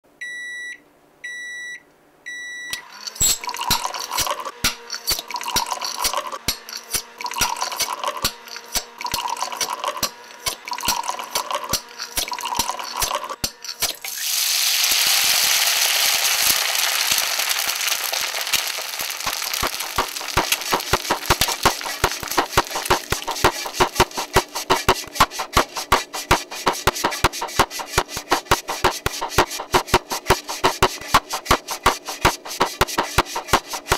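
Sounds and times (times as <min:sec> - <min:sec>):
electronic appliance beeps: 0:00.2 - 0:04.2.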